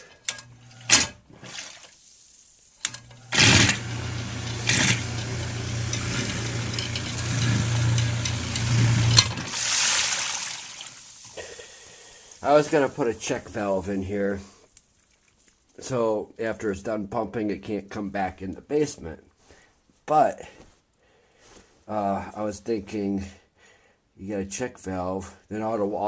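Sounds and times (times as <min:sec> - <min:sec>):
sump pump humming: 0:00.0 - 0:01.9, 0:02.8 - 0:14.0
water draining down pipe: 0:02.8 - 0:14.0
water rushing through pipe: 0:03.1 - 0:13.9.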